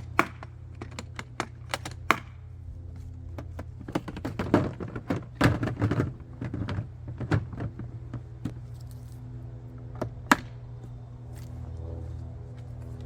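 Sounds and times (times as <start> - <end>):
steady low hum: 0.0 - 13.0
plastic boxes clicking and clattering: 3.8 - 8.5.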